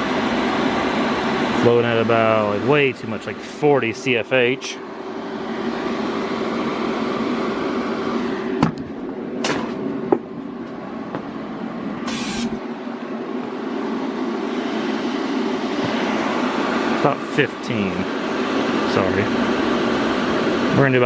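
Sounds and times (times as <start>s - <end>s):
steady machine hum: 0.0s - 21.0s
gas hissing through a line: 12.0s - 12.6s
short sharp hiss: 12.0s - 12.6s.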